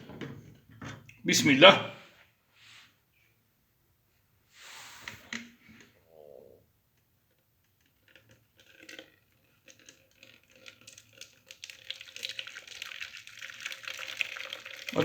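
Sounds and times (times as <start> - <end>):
water pouring and trickling: 8.0 - 15.0.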